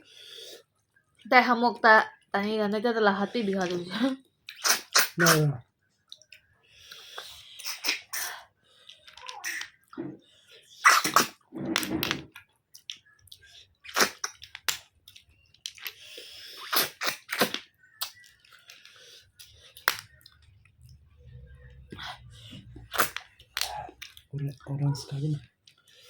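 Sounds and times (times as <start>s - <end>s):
chewing and sucking: 3.2s - 5.4s, 6.0s - 11.4s, 12.3s - 24.7s
hissing slurp: 4.5s - 5.6s, 9.3s - 12.0s, 16.1s - 17.6s.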